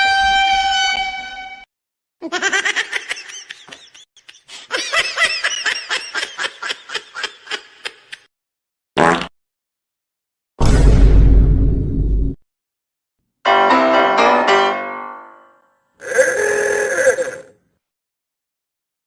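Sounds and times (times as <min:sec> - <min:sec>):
high-pitched pulsing laugh: 0:16.0 - 0:17.5.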